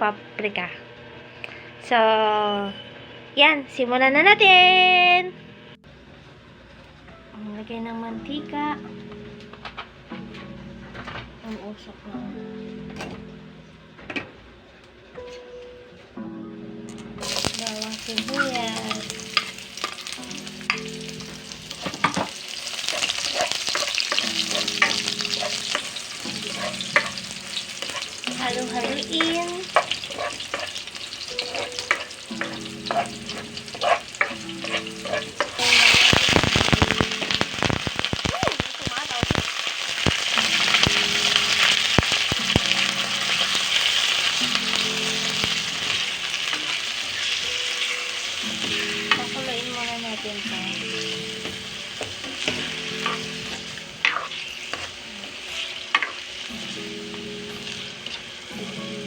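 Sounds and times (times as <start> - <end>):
garlic and onion sizzling in oil: 17.2 - 59.0
spatula scraping a pan: 21.7 - 37.4, 52.4 - 56.2.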